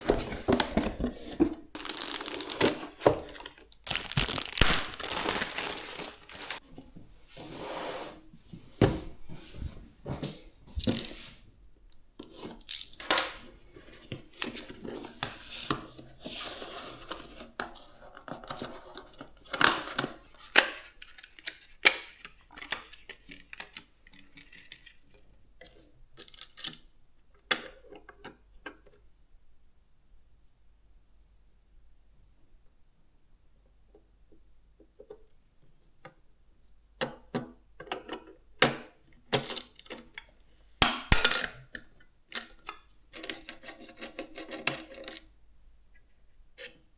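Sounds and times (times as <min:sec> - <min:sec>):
packaging tearing and crinkling: 0:01.8 - 0:06.6.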